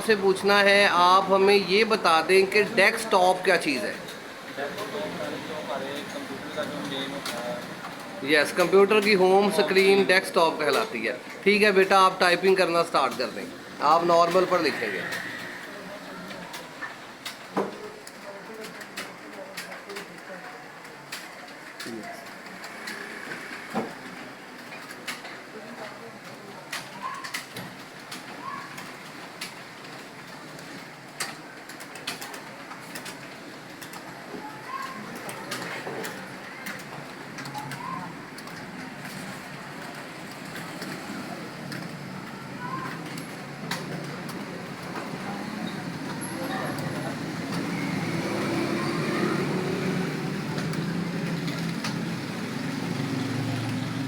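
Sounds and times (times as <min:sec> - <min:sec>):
slow keyboard typing: 0:11.6 - 0:53.9.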